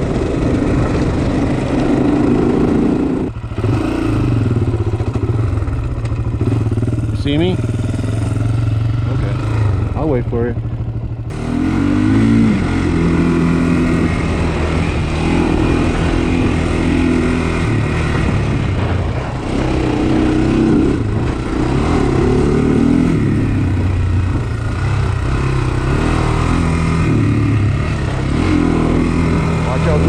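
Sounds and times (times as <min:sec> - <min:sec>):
quad bike engine revving: 0:00.0 - 0:30.0.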